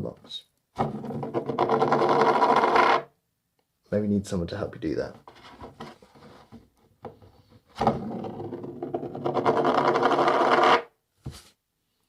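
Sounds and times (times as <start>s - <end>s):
coin spinning on cardboard: 0.8s - 3.1s, 7.8s - 10.9s.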